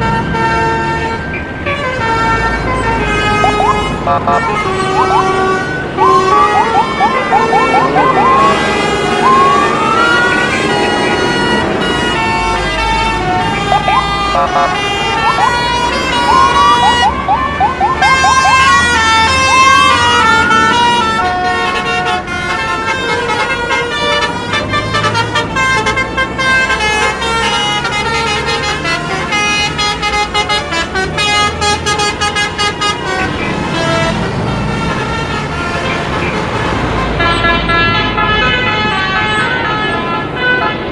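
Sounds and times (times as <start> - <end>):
multi-tone bus horn: 0.0 - 40.9
road noise: 0.0 - 40.9.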